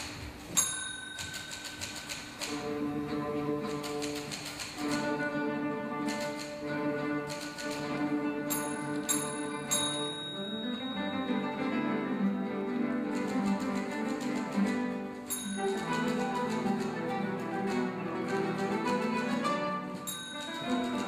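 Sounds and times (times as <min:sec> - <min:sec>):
bright bell-like dings: 0:00.6 - 0:01.9, 0:08.5 - 0:11.8, 0:15.3 - 0:16.2, 0:20.0 - 0:21.0
rapid clicking: 0:01.2 - 0:02.7, 0:03.6 - 0:05.3, 0:05.9 - 0:08.2, 0:13.0 - 0:21.0
guitar orchestra playing: 0:02.5 - 0:21.0.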